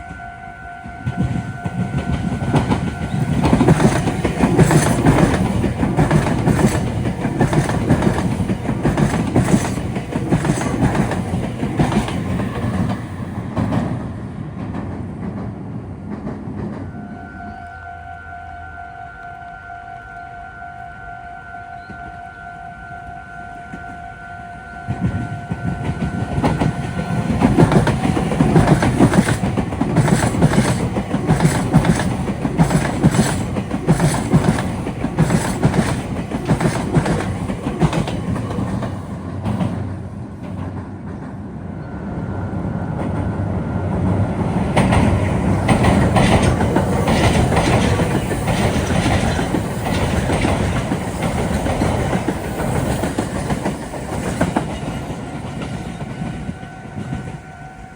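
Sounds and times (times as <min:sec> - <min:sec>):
train wheels clattering over rail joints: 0:01.1 - 0:16.9, 0:24.9 - 0:41.4, 0:43.9 - 0:57.4.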